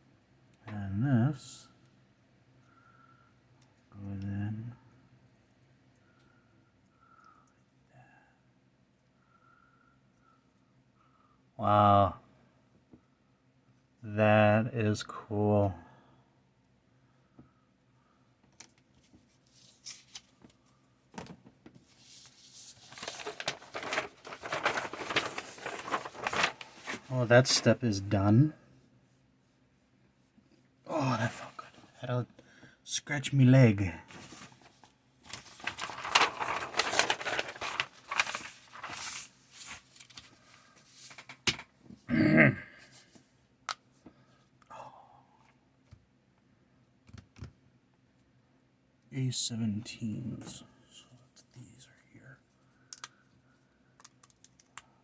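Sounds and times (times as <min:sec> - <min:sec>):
paper rustling and crinkling: 0:19.0 - 0:20.6, 0:21.8 - 0:27.7, 0:34.1 - 0:41.6
low grunt: 0:30.9 - 0:31.5, 0:42.1 - 0:42.8.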